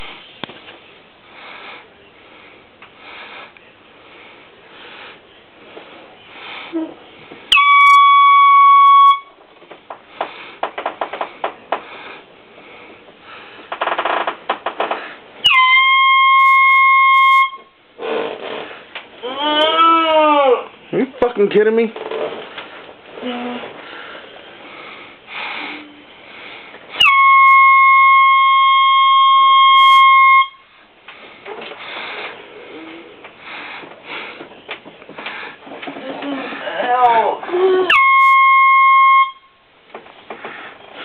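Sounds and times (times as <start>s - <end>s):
air horn blasts: 7.5s - 9.4s, 15.4s - 17.8s, 26.9s - 30.7s, 37.9s - 39.7s.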